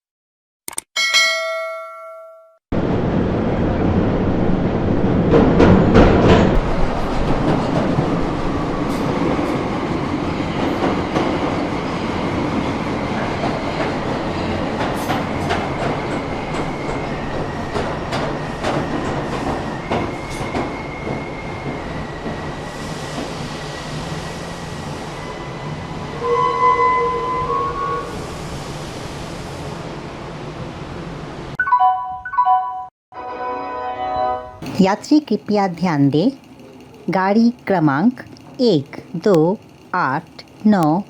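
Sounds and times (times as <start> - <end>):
train rumbling on rails: 2.7 - 31.6, 34.3 - 41.0
faint high wheel squeal: 25.2 - 28.2.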